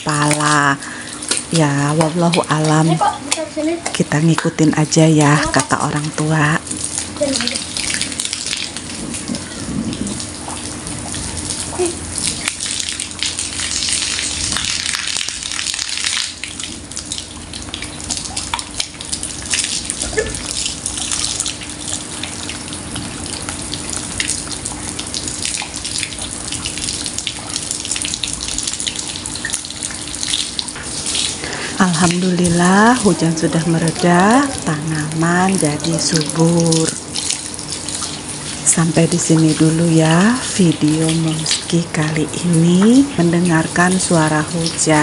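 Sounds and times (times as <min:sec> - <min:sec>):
water pouring and splashing: 0:00.0 - 0:45.0.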